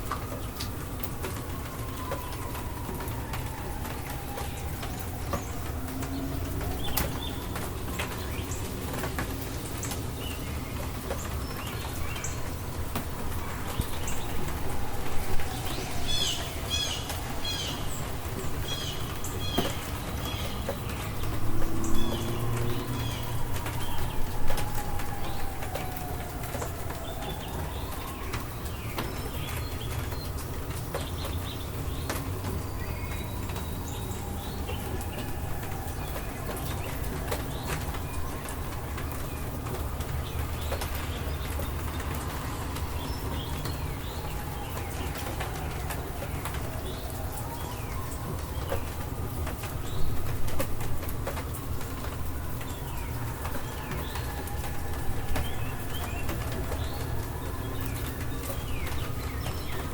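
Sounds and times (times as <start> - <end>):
steady rain: 0.0 - 59.9
water drips: 0.0 - 59.9
bird chirping: 13.4 - 25.5.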